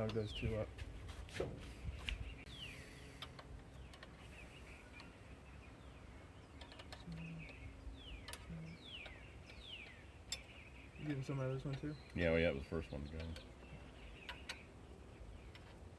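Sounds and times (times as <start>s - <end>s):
low steady hum: 0.0s - 15.9s
faint clicks: 3.2s - 4.2s.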